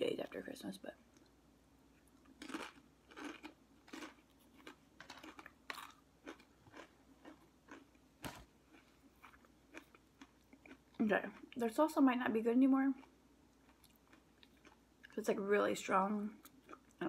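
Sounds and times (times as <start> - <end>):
person chewing crunchy food: 2.0 - 11.6, 13.0 - 15.2, 16.4 - 17.0.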